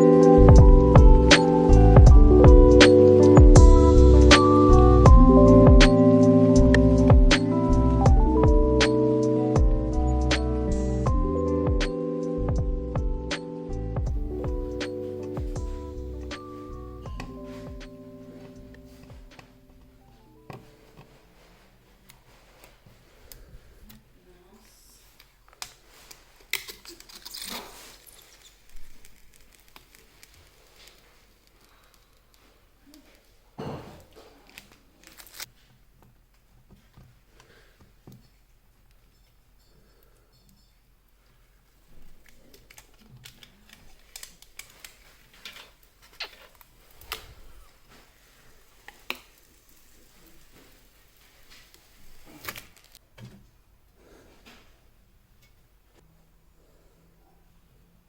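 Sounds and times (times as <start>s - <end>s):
rustling scrapes: 25.8s - 32.0s.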